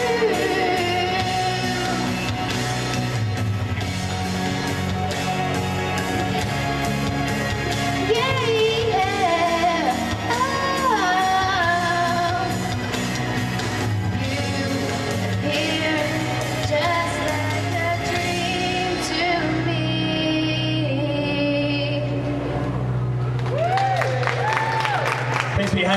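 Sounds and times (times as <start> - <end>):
woman singing pop ballad: 0.0 - 2.5, 8.0 - 12.9, 13.9 - 22.6
instrumental accompaniment: 0.0 - 23.8.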